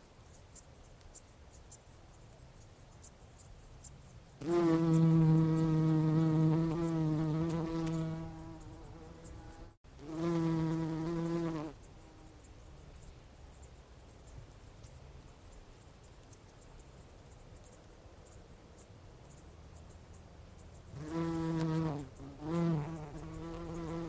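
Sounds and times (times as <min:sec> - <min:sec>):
bumblebee buzzing in flight: 0:04.4 - 0:12.3, 0:21.0 - 0:24.0.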